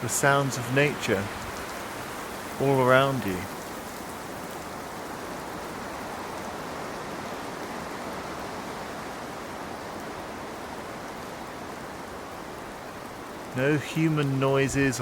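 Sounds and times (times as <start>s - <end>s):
rain falling in forest: 0.0s - 15.0s.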